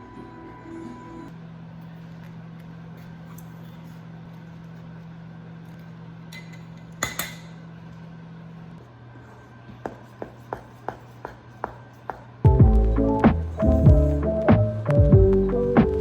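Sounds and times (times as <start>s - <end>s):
low hum: 12.4s - 16.0s.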